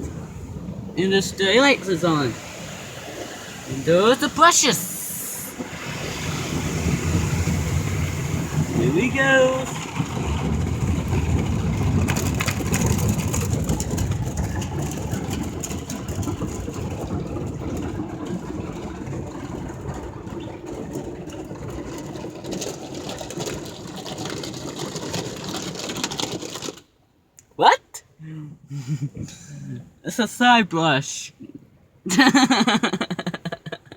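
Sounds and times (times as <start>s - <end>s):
car wash brushes scrubbing car: 0.0s - 26.8s.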